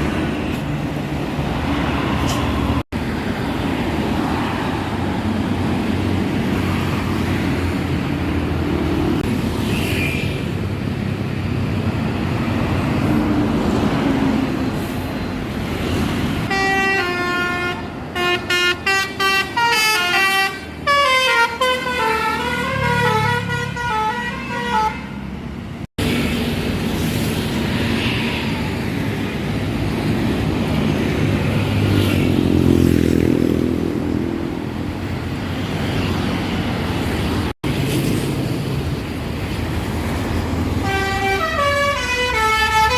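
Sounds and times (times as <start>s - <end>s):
bus engines running: 0.0s - 42.9s
road traffic: 0.0s - 42.9s
multi-tone bus horn tune: 16.5s - 25.3s, 40.8s - 42.9s.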